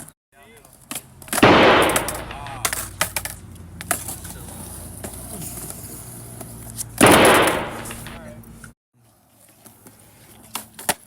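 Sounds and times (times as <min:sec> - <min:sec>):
skateboard clacking on ground: 0:00.6 - 0:08.3.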